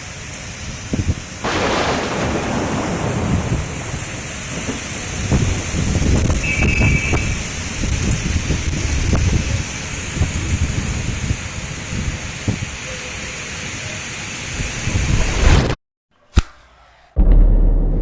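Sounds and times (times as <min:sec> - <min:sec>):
rain falling: 0:00.0 - 0:14.0
thunder crack and rumble: 0:01.0 - 0:11.4.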